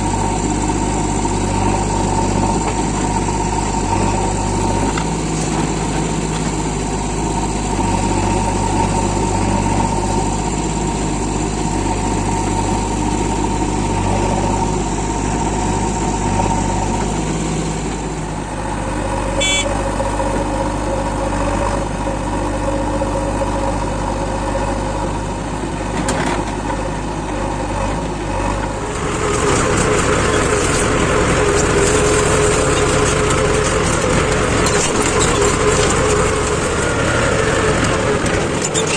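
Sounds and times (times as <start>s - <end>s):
diesel engines running: 0.0s - 38.9s.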